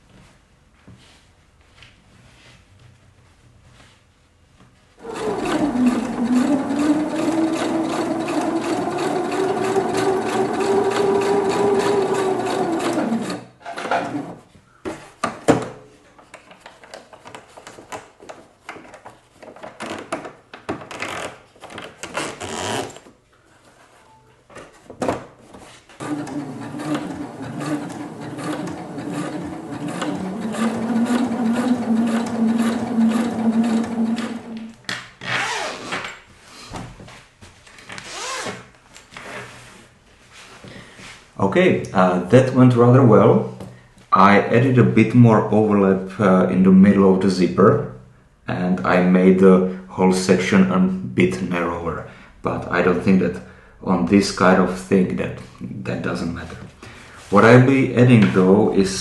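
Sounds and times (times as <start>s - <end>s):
sewing machine stitching: 5.0s - 14.4s, 26.0s - 34.8s.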